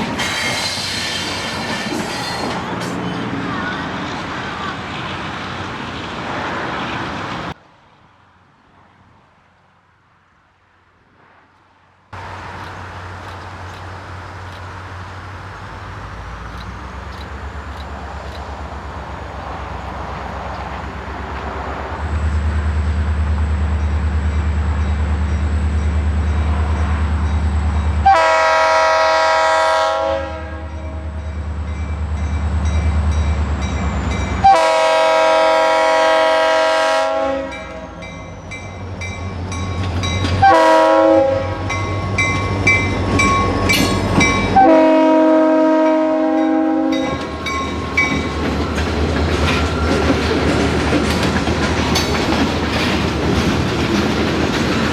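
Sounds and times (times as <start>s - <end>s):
locomotive engine rumble: 0.0s - 7.6s, 12.2s - 29.5s, 31.0s - 54.9s
train air horn: 28.0s - 31.2s, 34.4s - 38.0s, 40.4s - 41.8s, 43.8s - 47.2s.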